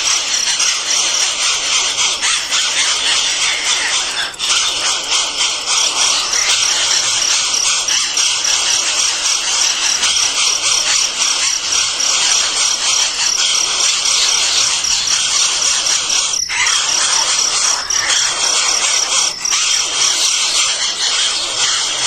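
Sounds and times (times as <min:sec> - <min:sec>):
insects chirping in chorus: 0:00.0 - 0:22.0.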